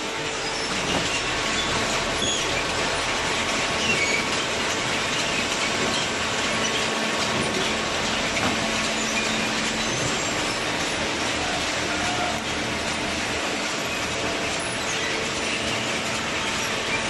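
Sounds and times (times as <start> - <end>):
baler mechanical noise: 0.0 - 17.0
high metal squeaks: 0.2 - 17.0.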